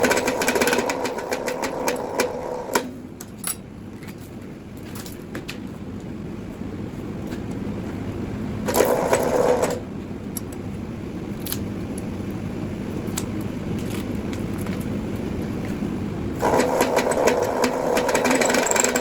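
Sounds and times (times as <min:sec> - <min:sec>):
wire stripping machine running: 0:00.0 - 0:02.9, 0:08.6 - 0:09.9, 0:16.4 - 0:19.0.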